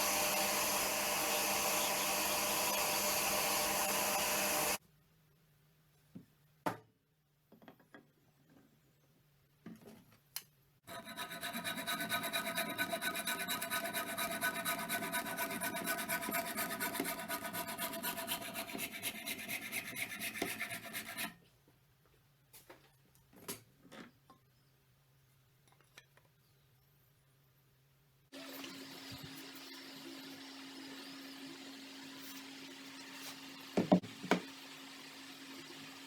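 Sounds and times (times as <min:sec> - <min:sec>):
file rasping over metal: 0:00.0 - 0:04.8, 0:10.9 - 0:21.4.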